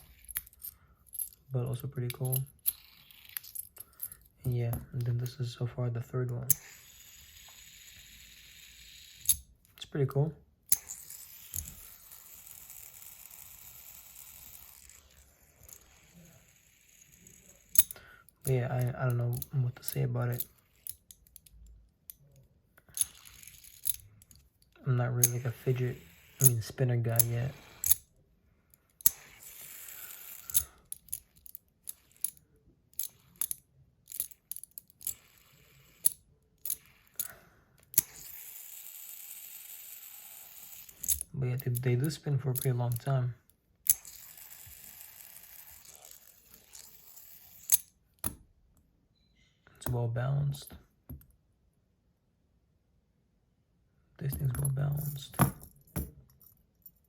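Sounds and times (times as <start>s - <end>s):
fidget spinner whirring: 6.6s - 9.3s, 10.7s - 17.9s, 22.9s - 24.2s, 25.2s - 28.0s, 29.0s - 32.4s, 34.2s - 37.3s, 38.0s - 41.2s, 43.9s - 47.9s.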